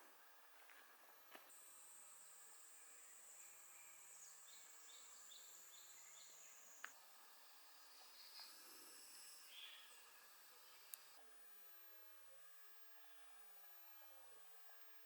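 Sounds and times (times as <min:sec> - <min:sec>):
cicada buzz: 0:00.0 - 0:11.2
small bird chirps: 0:01.6 - 0:11.2.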